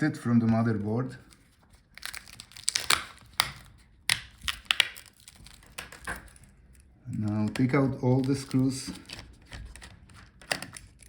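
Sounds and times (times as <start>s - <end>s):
cable connector clicking and scraping: 3.1s - 11.0s.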